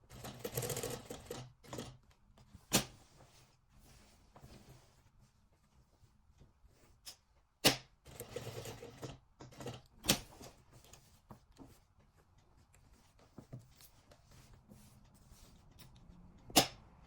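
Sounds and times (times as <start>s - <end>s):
rustling handling noise: 2.0s - 7.6s, 10.2s - 16.2s.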